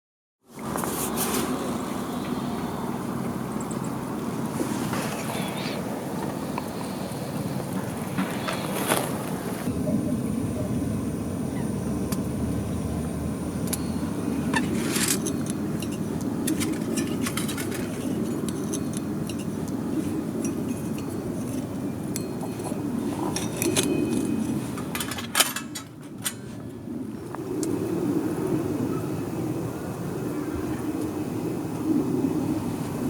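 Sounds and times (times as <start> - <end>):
steady low rumble: 1.5 - 33.0
camp gear clicking and clinking: 4.5 - 9.7, 13.6 - 26.8.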